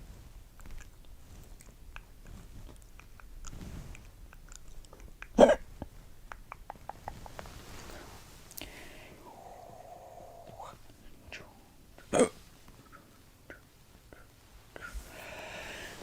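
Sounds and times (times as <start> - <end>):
girl hiccuping: 5.4 - 5.7, 12.0 - 12.4.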